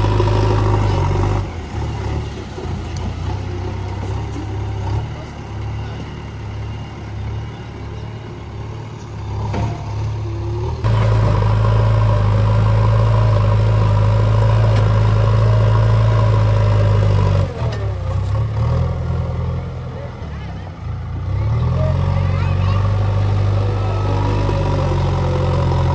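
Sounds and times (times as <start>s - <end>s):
diesel engine of heavy machinery: 0.0s - 25.9s
machinery whine: 22.0s - 25.9s.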